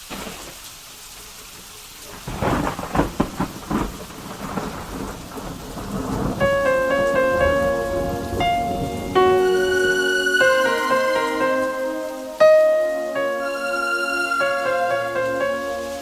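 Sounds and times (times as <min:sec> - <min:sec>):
thunder clap rumbling: 0:00.0 - 0:13.2
steady rain: 0:00.0 - 0:16.0
bell-like keyboard melody: 0:06.4 - 0:16.0.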